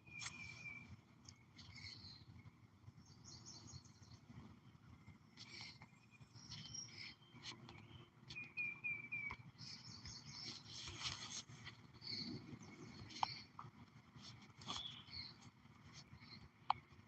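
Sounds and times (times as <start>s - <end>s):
low background rumble: 0.0s - 17.0s
small birds chirping: 0.0s - 17.0s.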